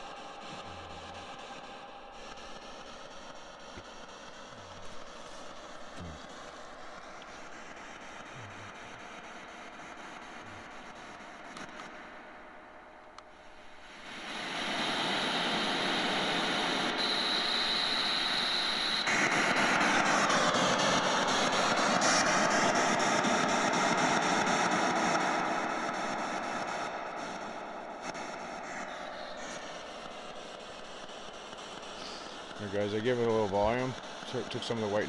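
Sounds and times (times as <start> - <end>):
radio static hiss: 0.0 - 35.0
faint whistling tone: 15.5 - 22.8, 27.4 - 35.0.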